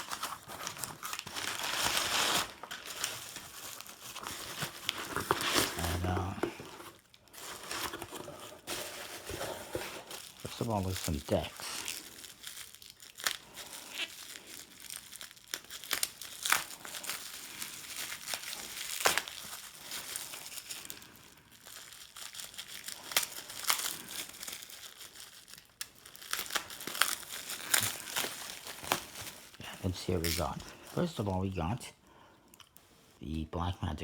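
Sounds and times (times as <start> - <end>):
packaging crinkling and rustling: 0.0 - 31.4.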